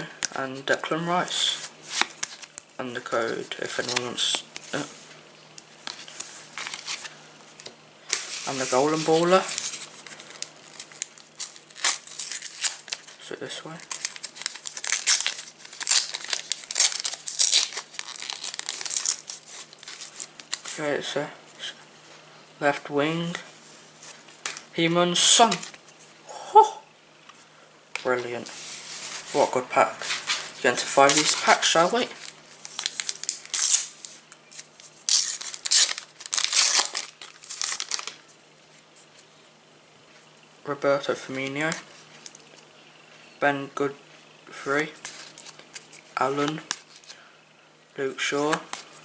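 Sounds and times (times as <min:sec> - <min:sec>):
foil wrapper crinkling and tearing: 0:08.1 - 0:20.8, 0:30.8 - 0:38.4, 0:45.0 - 0:47.2.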